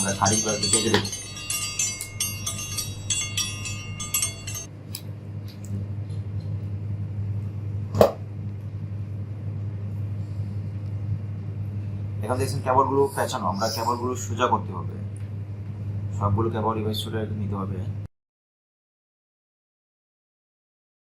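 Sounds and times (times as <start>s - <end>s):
metal hand tools clinking: 0.0s - 4.7s
steady low hum: 0.0s - 18.1s.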